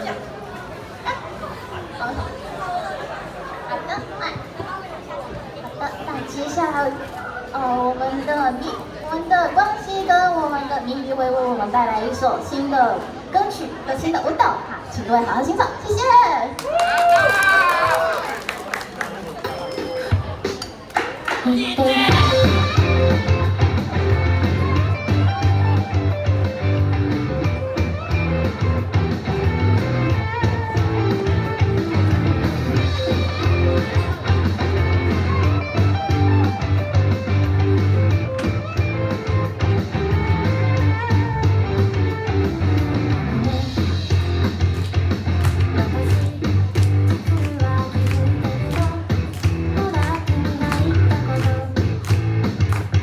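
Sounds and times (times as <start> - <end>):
steady bass line: 22.0 - 53.0.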